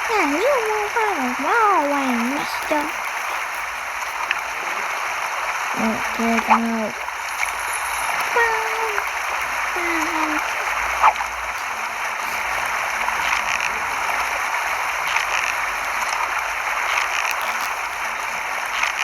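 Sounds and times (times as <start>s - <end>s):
child's voice: 0.0s - 3.6s, 5.8s - 7.0s, 8.3s - 9.2s, 9.8s - 10.7s
rushing water: 0.0s - 19.0s.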